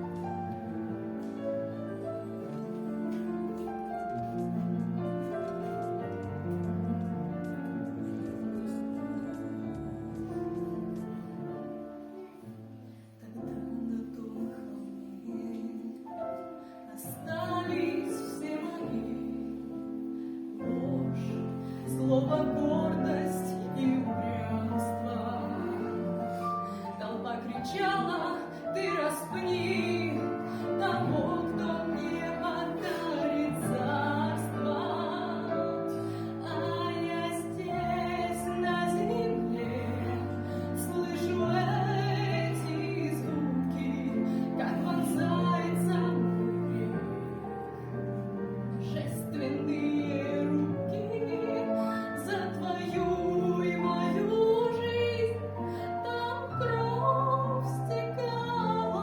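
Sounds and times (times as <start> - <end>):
instrumental accompaniment: 0.0 - 59.0
person singing a christian song: 27.0 - 47.4.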